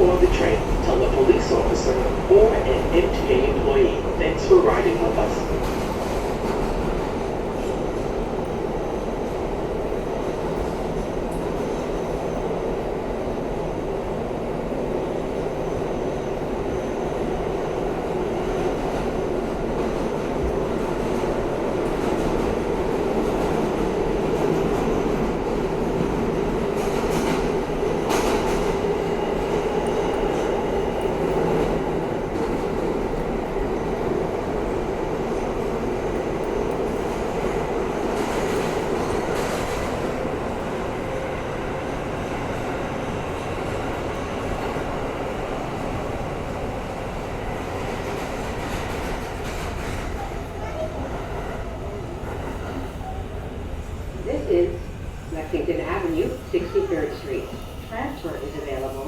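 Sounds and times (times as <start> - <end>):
steel wheels rumbling on rail: 0.0 - 59.0.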